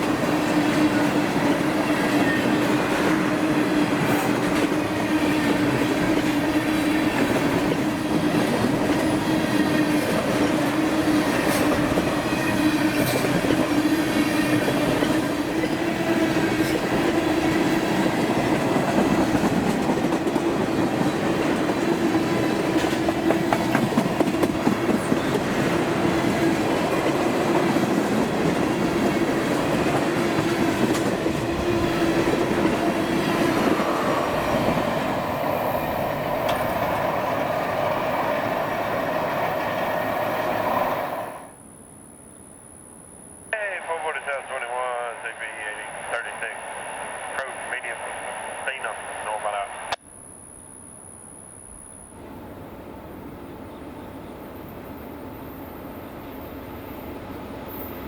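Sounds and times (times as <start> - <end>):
freight train rumbling past: 0.0 - 41.6.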